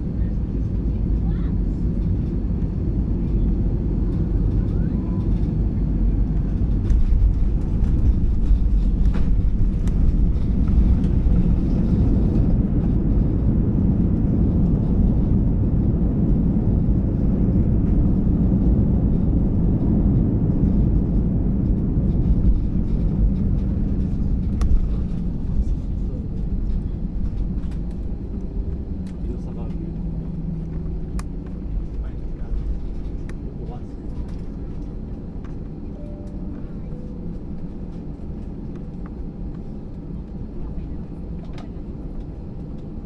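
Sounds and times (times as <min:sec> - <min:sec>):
airplane cabin engine rumble: 0:00.0 - 0:43.0.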